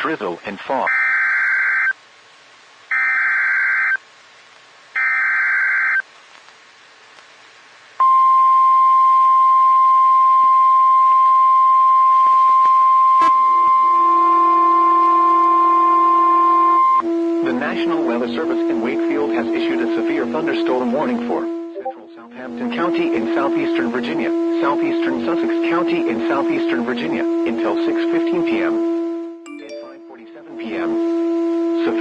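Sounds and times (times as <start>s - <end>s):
steady single-pitch alarm tone: 0.9s - 2.0s, 2.9s - 4.0s, 5.0s - 6.0s, 8.0s - 32.0s
harsh digital data buzzes: 2.9s - 4.0s, 5.0s - 6.0s.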